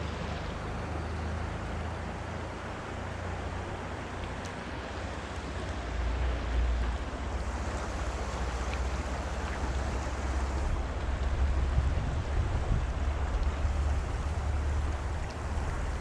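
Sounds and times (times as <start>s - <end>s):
fast-flowing river rushing: 0.0s - 16.0s
wind buffeting microphone: 7.2s - 16.0s.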